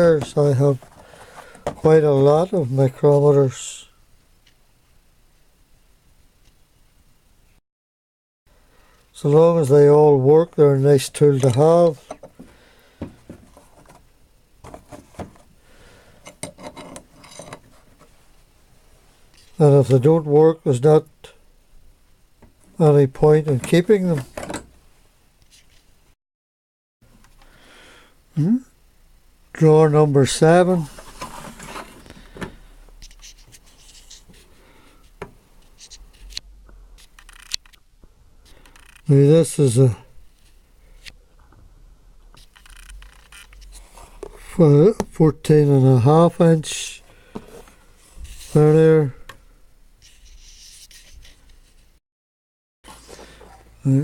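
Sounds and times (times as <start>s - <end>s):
metal tools scraping in drawer: 16.2s - 17.9s.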